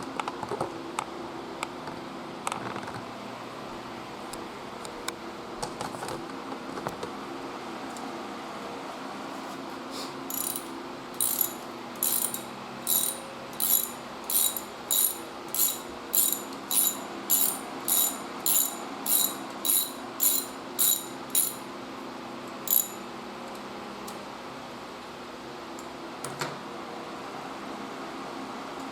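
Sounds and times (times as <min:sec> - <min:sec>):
socket ratchet wrench clicking: 0:10.3 - 0:21.6, 0:22.7 - 0:23.0.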